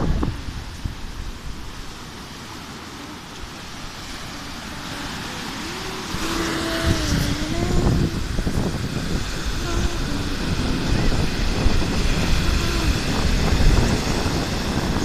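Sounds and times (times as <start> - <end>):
noisy wash: 0.0 - 15.0
motor humming: 2.7 - 15.0.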